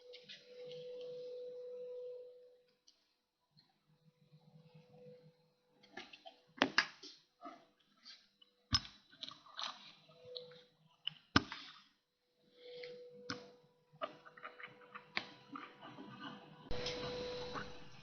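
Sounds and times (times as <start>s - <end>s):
faint steady hum: 12.3s - 18.0s.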